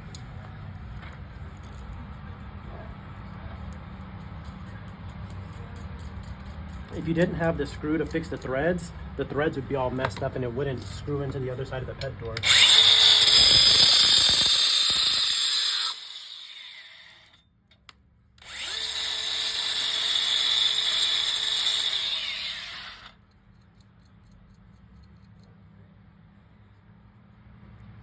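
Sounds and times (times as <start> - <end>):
angle grinder cutting steel screws: 12.3 - 17.4, 18.4 - 23.8.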